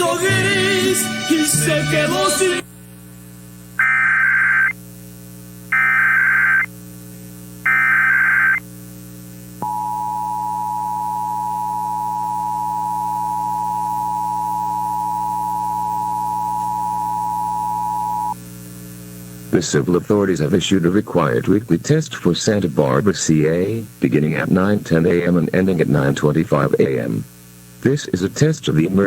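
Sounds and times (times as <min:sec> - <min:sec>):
low steady hum: 0:02.6 - 0:29.0
digital data screech: 0:03.8 - 0:04.8, 0:05.7 - 0:06.7, 0:07.7 - 0:08.6
two-tone attention signal: 0:09.6 - 0:18.4.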